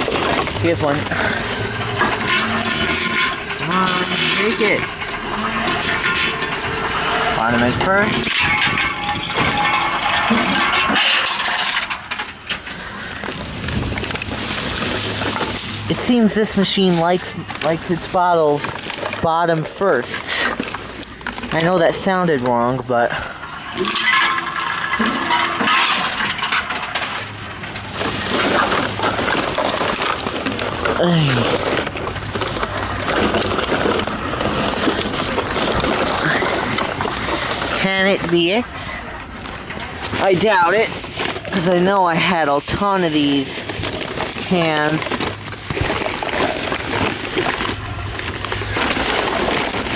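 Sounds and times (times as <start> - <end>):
machine motor hum: 0.0 - 9.7
vending machine metallic rattle: 0.0 - 12.7, 13.4 - 49.9
can clattering: 0.0 - 38.6, 39.2 - 49.9.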